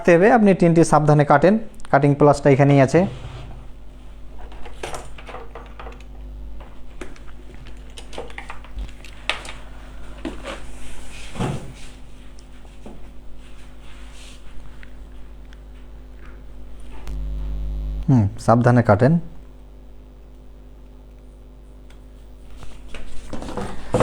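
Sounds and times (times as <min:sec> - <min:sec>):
steady electrical hum: 0:00.0 - 0:24.0.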